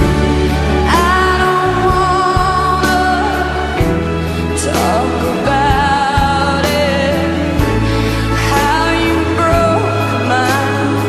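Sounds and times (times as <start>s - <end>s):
pop ballad music: 0.0s - 11.0s.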